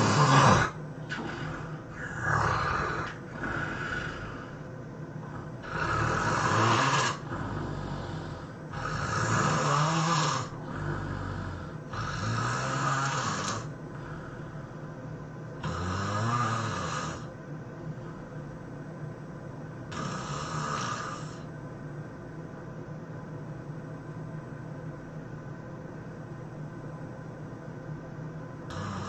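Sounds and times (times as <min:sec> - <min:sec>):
person snoring: 0:00.0 - 0:04.6, 0:05.2 - 0:14.8, 0:15.6 - 0:17.3, 0:19.9 - 0:21.5, 0:28.7 - 0:29.0
quiet breaths: 0:00.0 - 0:22.1.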